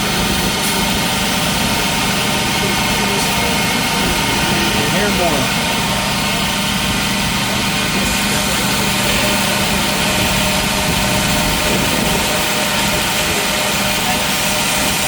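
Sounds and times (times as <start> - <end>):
forge equipment roaring and hissing: 0.0 - 15.0.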